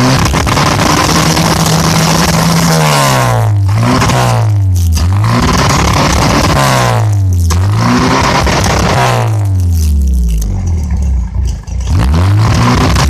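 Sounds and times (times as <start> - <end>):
car engine revving: 0.0 - 13.0.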